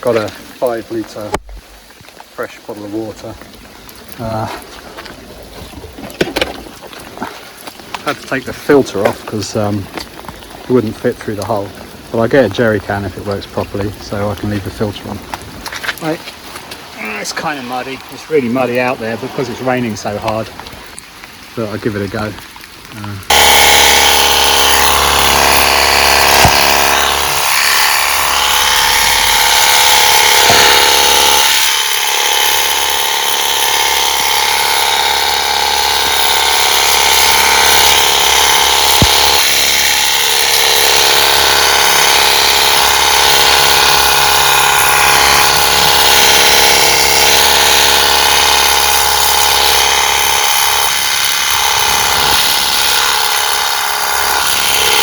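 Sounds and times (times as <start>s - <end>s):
pressure washer running: 8.0s - 10.0s, 16.0s - 16.3s, 17.0s - 20.4s, 23.3s - 55.0s.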